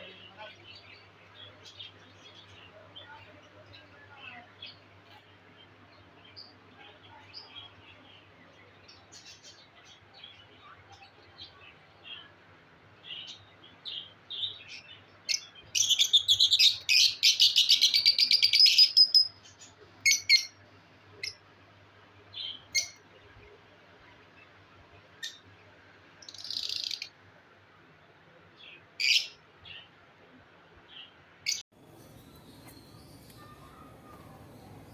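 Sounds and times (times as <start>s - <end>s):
budgerigars chirping: 31.9s - 34.9s
budgerigars rapid chattering: 31.9s - 34.9s.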